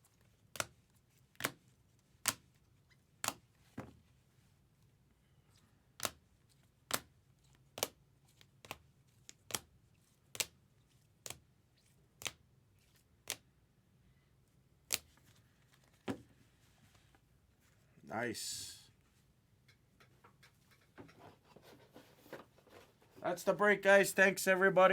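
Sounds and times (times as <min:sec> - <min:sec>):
cards clicking on a table: 0:06.0 - 0:06.2.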